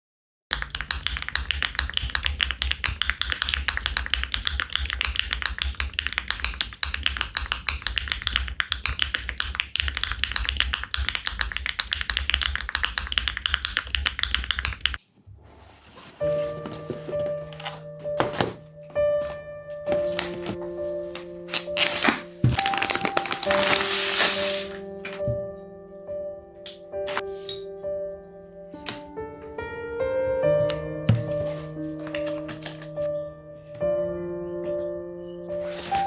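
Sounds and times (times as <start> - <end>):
mechanical keyboard typing: 0.5 - 15.0.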